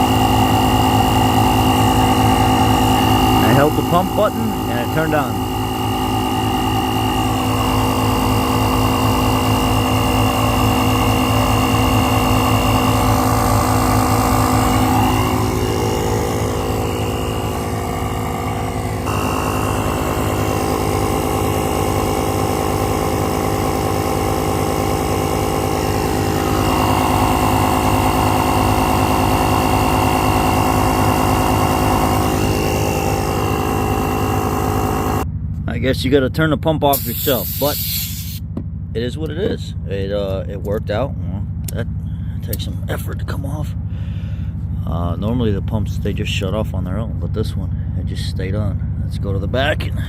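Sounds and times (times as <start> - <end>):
air compressor pulsing: 0.0 - 35.5, 36.9 - 46.6.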